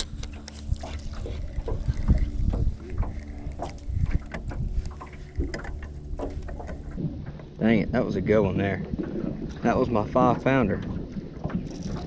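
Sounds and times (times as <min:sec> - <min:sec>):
steady low hum: 0:00.0 - 0:12.0
water against hull: 0:00.0 - 0:12.0
wind on microphone: 0:00.0 - 0:12.0.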